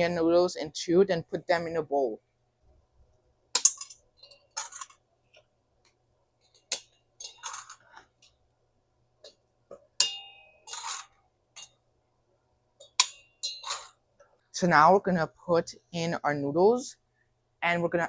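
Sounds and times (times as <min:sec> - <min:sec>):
pieces clinking into bowl: 0:12.8 - 0:14.0.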